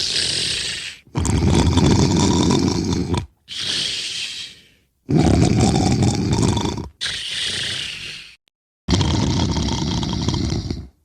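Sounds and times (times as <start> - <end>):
hissing breath: 0.0 - 1.2, 3.4 - 4.9, 7.0 - 8.4
loud snoring: 0.0 - 11.0.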